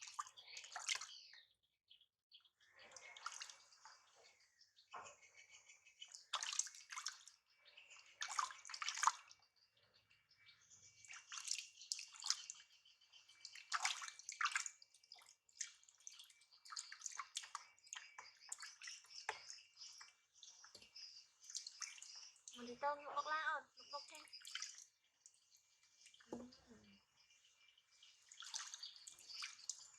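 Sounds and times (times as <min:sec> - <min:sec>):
water splashing from shower: 0:13.4 - 0:18.8, 0:28.3 - 0:29.9.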